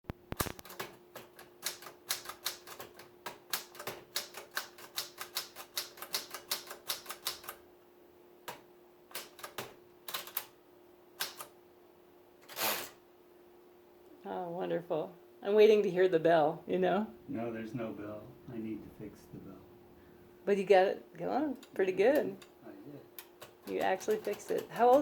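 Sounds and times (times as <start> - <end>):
manual typewriter keys clacking: 0.3 - 7.6, 8.5 - 10.5, 11.2 - 11.5, 23.2 - 25.0.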